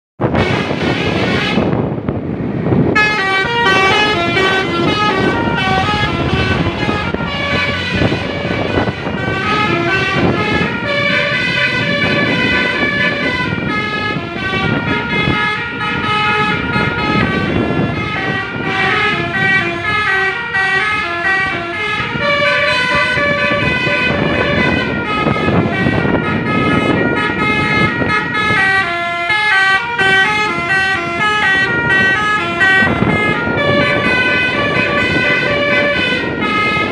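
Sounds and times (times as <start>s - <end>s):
multi-tone bus horn melody: 0.2s - 2.0s, 2.6s - 36.9s
low rough rumble: 0.2s - 28.7s.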